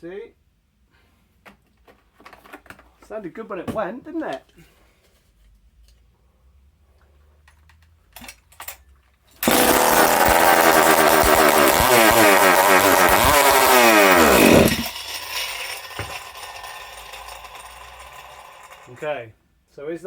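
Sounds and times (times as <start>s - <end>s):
chainsaw running loudly: 9.4s - 19.0s
chainsaw starter rasps: 9.4s - 19.1s.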